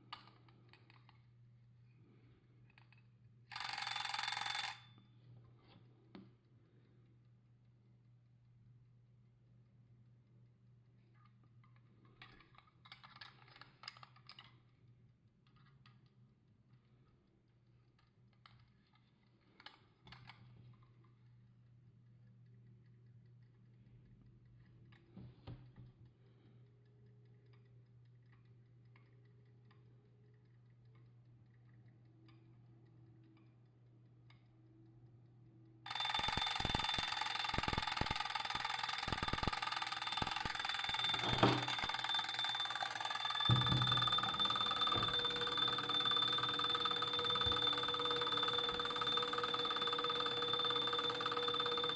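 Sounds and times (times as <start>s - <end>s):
alarm bell ringing: 3.6s - 4.9s, 35.9s - 51.9s
small clock clicks: 35.9s - 51.9s.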